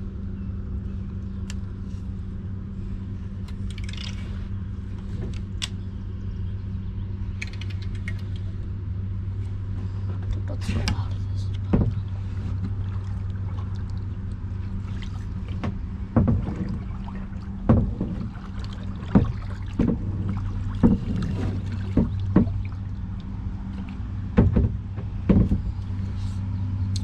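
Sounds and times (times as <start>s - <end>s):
steady low hum: 0.0s - 27.0s
paddle knocks and splashes: 10.7s - 23.1s, 23.8s - 25.8s.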